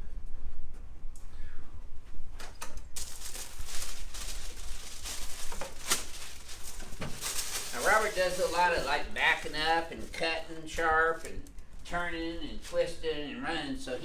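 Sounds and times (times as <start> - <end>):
rustling: 2.8 - 13.0.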